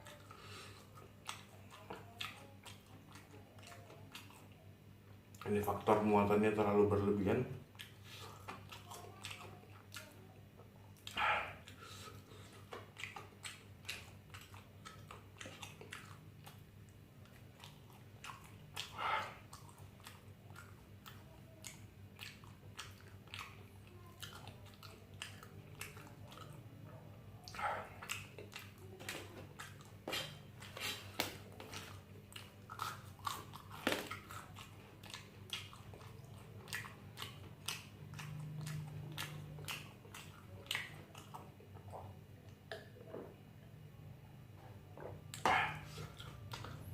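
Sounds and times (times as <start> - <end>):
person chewing food: 0.0 - 6.6, 7.6 - 43.4, 44.6 - 46.9
loud mouth sounds: 11.0 - 12.1, 45.3 - 46.2.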